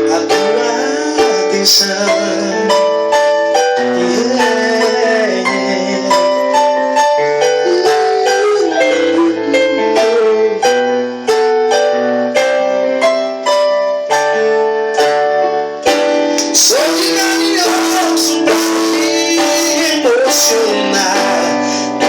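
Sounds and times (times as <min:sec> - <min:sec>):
instrumental piano: 0:00.0 - 0:22.0.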